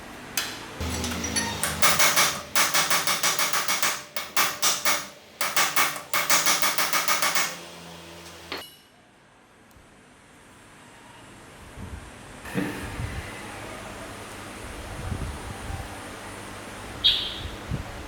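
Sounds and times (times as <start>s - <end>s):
hammer striking steel: 0.4s - 8.9s.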